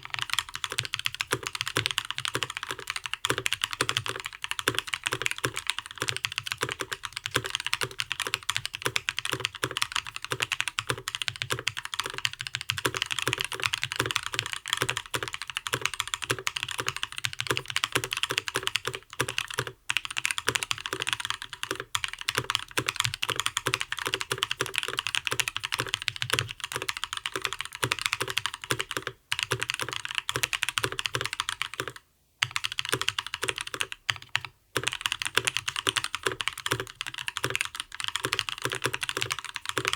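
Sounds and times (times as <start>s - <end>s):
mechanical keyboard typing: 0.0s - 39.9s.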